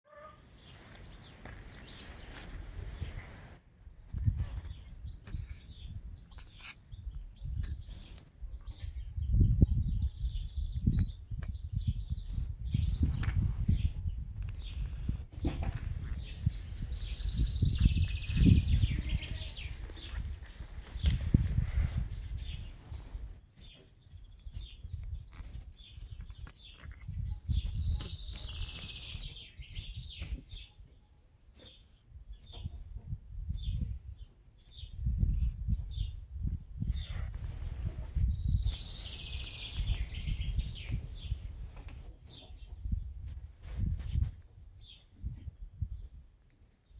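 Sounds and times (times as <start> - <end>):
birds chirping: 0.1 - 3.5, 4.1 - 32.9, 33.5 - 43.1
cat breathing with a wheeze: 21.5 - 23.5.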